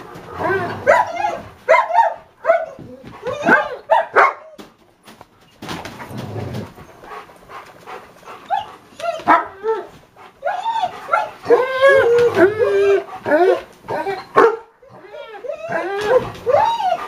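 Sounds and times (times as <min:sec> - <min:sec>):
dogs yipping: 0:00.3 - 0:04.7, 0:08.2 - 0:17.0.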